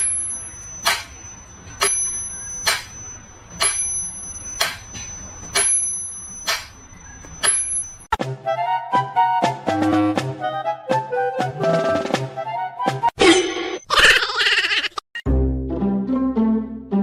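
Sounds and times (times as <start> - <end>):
small bell ringing: 0.0 - 8.1.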